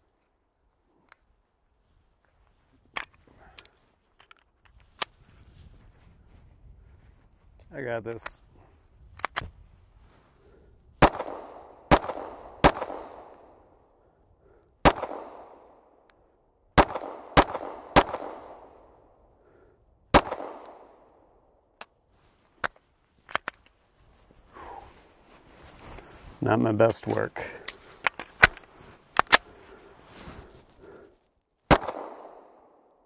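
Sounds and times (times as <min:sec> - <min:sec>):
pistol shots with echo: 0:11.0 - 0:13.5, 0:14.8 - 0:15.7, 0:16.8 - 0:18.8, 0:20.1 - 0:21.0, 0:31.7 - 0:32.8.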